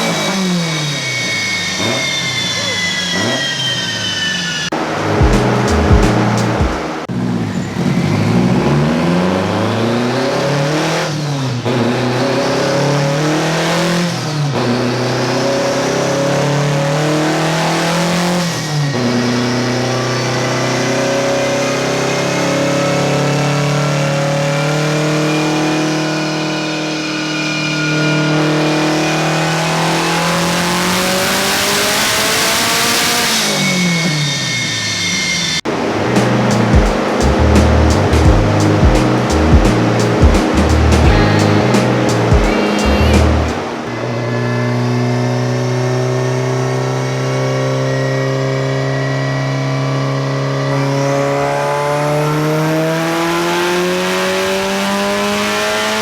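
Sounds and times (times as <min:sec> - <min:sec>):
high whine: 0:00.0 - 0:09.6, 0:33.0 - 0:49.5
car engine revving at full throttle: 0:00.0 - 0:56.0.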